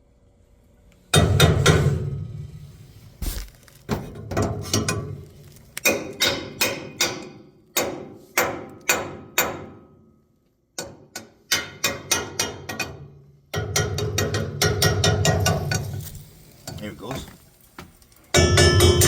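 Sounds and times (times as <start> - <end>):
hammer striking metal pipe: 1.1 - 2.2, 5.8 - 10.0, 10.8 - 16.0, 18.3 - 19.0.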